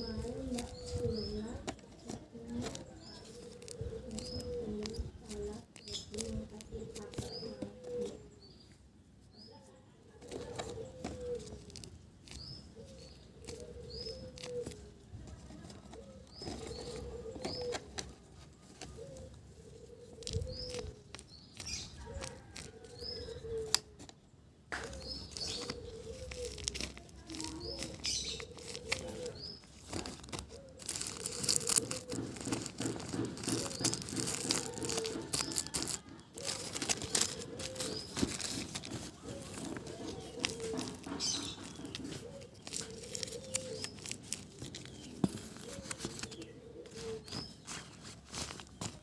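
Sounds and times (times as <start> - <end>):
bird cooing: 0.0 - 8.4, 10.1 - 24.1, 24.7 - 49.0
clicks and rustling: 23.6 - 49.0.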